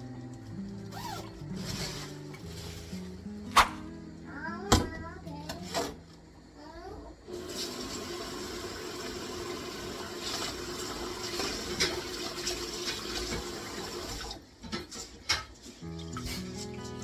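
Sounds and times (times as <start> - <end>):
tap water running: 0.0 - 3.5, 7.2 - 17.0
music with held notes: 0.0 - 4.6, 15.8 - 17.0.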